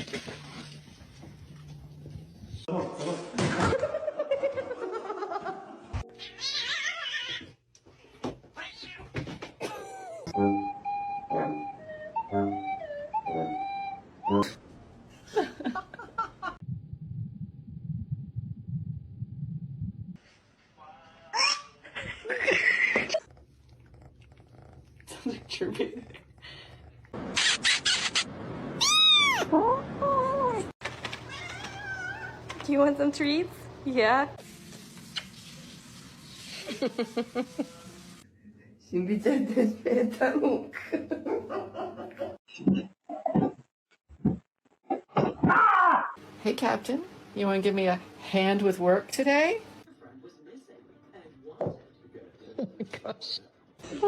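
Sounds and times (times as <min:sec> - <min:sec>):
cat meowing: 0:06.1 - 0:07.5, 0:28.8 - 0:29.5, 0:31.3 - 0:32.4.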